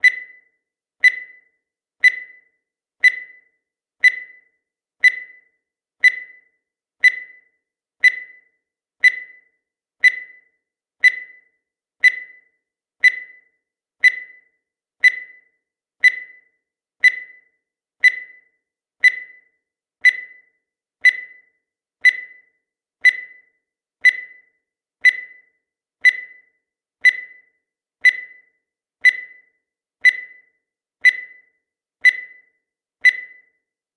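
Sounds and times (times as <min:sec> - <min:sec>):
high-pitched electronic beeps: 0:00.0 - 0:00.4.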